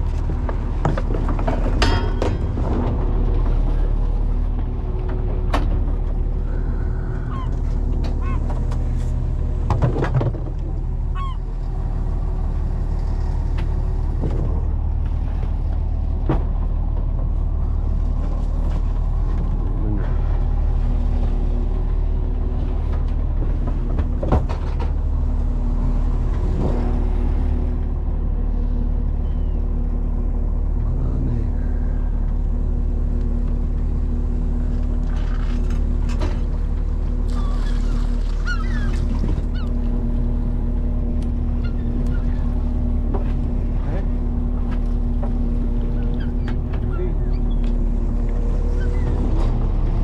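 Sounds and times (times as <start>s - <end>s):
boat engine humming: 0.0s - 50.0s.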